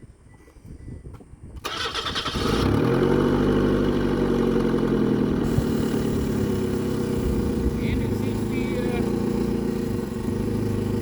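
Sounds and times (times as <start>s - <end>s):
engine starter cranking: 1.6s - 3.0s
car engine idling: 3.0s - 11.0s.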